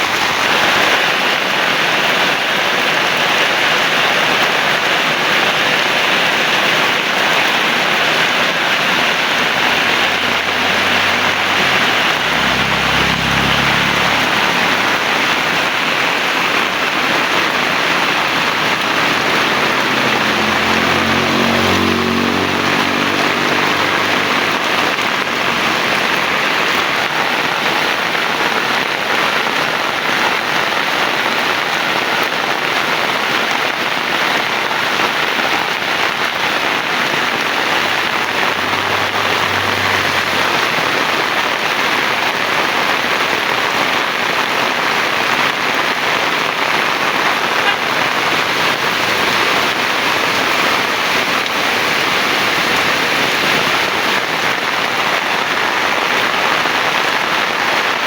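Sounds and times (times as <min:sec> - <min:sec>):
heavy rain hiss: 0:00.0 - 0:58.0
passing vehicle engine hum: 0:05.4 - 0:28.8, 0:35.3 - 0:44.4, 0:45.0 - 0:55.3.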